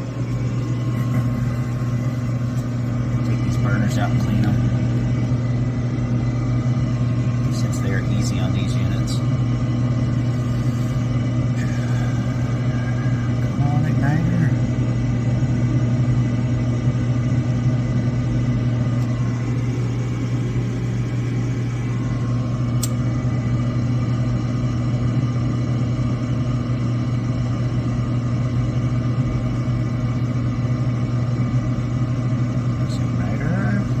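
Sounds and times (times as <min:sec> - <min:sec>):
gas furnace humming: 0:00.0 - 0:34.0.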